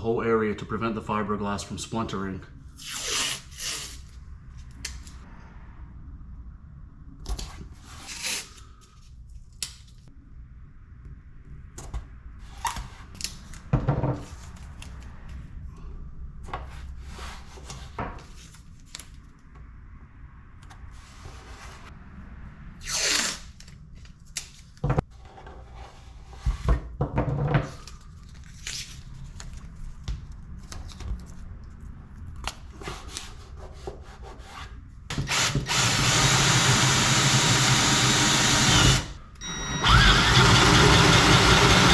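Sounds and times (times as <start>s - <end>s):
power drill running: 35.1s - 41.9s.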